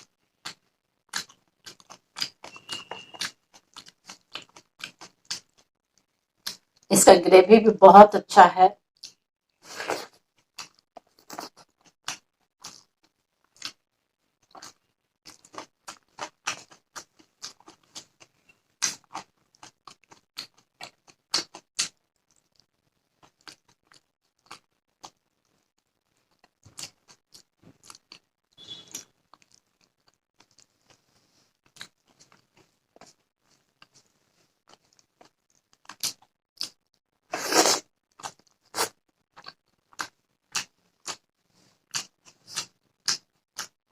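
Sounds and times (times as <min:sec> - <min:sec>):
crunchy chewing: 0:00.0 - 0:06.9, 0:09.0 - 0:13.8, 0:14.4 - 0:43.8
wet chewing: 0:00.0 - 0:06.9, 0:09.0 - 0:13.8, 0:14.4 - 0:43.8
lip smacks: 0:41.9 - 0:43.8.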